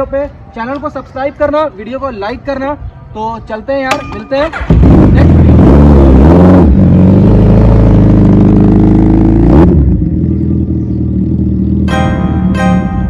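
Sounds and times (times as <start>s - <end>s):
motorcycle engine revving: 4.5s - 12.8s
piano music: 11.8s - 13.0s.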